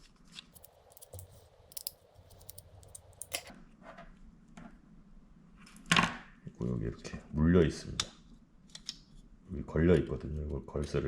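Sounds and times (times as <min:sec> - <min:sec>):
small screwdriver clicks and taps: 0:00.6 - 0:03.5.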